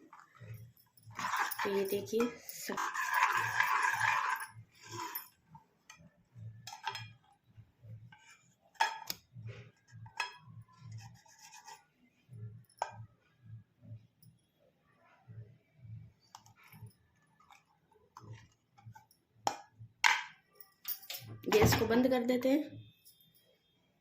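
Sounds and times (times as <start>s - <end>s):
spoon scraping a pan: 1.1s - 6.0s, 6.7s - 7.2s, 8.0s - 12.0s.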